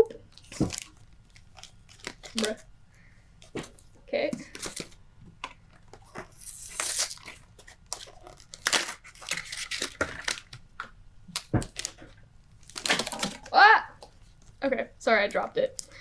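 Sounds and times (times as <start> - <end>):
foil wrapper tearing and crinkling: 0.3 - 2.7, 4.5 - 5.0, 5.7 - 12.0, 12.6 - 13.5.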